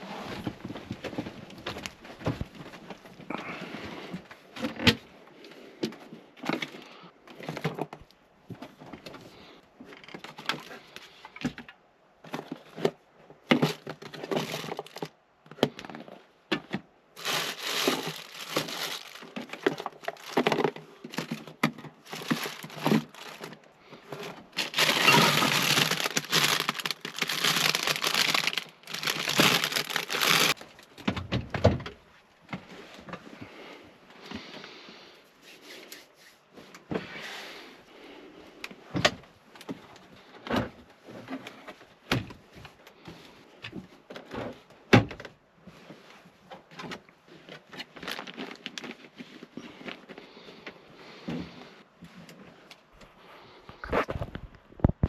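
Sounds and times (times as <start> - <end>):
crinkling rustling: 12.3 - 31.1, 47.3 - 50.6.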